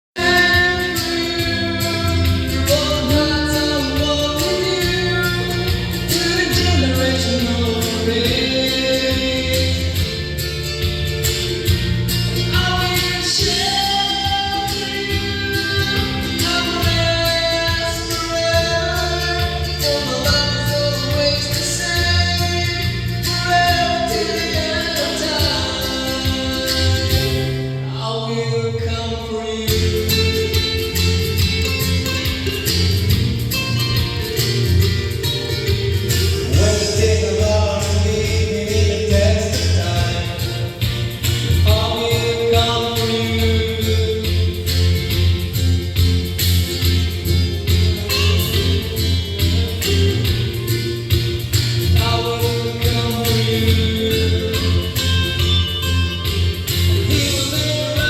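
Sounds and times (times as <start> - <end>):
instrumental backing track: 0.2 - 28.1, 28.8 - 58.0
person singing gospel song: 0.2 - 58.0.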